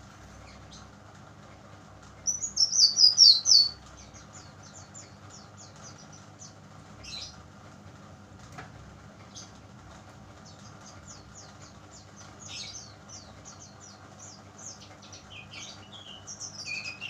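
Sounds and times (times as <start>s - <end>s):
bird singing high chirping notes: 2.3s - 3.8s.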